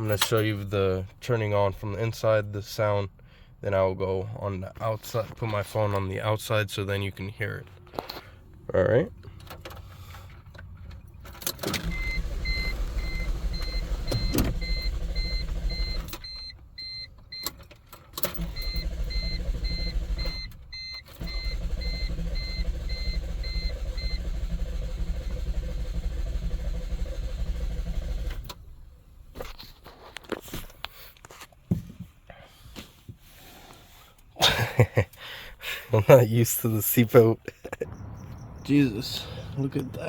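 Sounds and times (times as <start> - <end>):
car starter cranking: 11.2 - 29.4
dashboard warning chime: 11.8 - 17.5.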